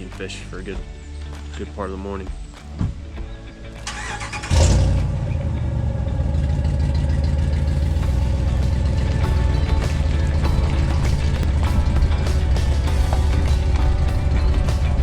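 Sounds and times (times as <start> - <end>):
engine starting and rumbling: 3.8 - 15.0.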